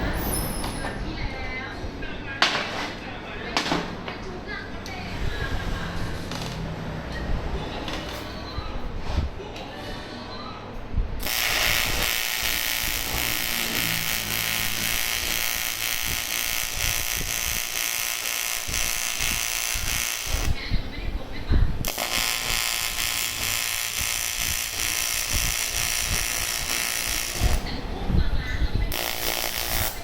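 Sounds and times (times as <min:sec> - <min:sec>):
welding arc buzzing crackle: 0:11.2 - 0:20.6, 0:21.8 - 0:27.8, 0:28.9 - 0:30.0.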